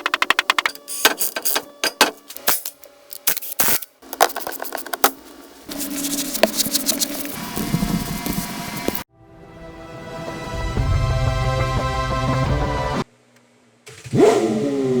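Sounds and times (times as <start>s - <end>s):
scattered clacks and knocks: 0.0s - 1.4s.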